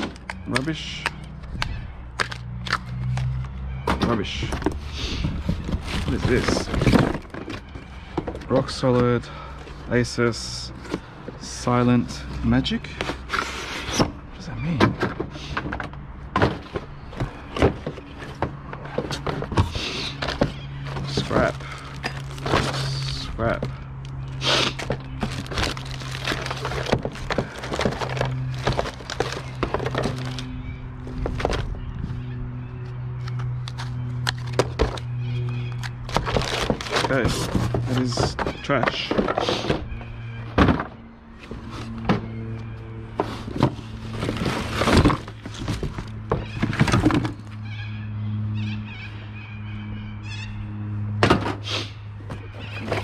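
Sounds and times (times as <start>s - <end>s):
scrap items clattering: 3.9s - 9.5s, 14.7s - 23.8s, 24.4s - 31.7s, 36.1s - 39.9s, 43.2s - 47.5s, 52.7s - 53.0s.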